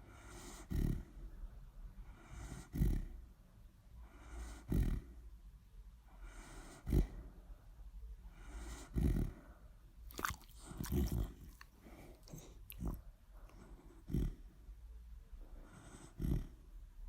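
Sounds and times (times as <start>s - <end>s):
dog snoring: 0.0s - 1.2s, 2.0s - 3.2s, 4.0s - 5.2s, 6.2s - 7.3s, 8.3s - 14.6s, 15.6s - 16.7s
dog breathing softly: 0.0s - 3.3s, 3.9s - 5.3s, 6.0s - 16.7s.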